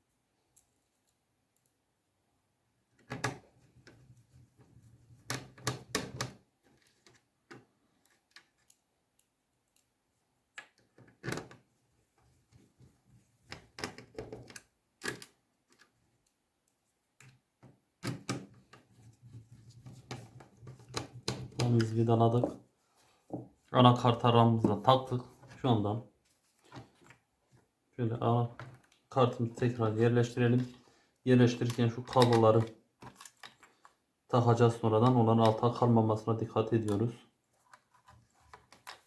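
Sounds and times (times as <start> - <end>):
small clicks and knocks: 5.2 - 9.9, 13.4 - 18.9, 19.6 - 22.5, 31.6 - 34.0, 37.6 - 39.0.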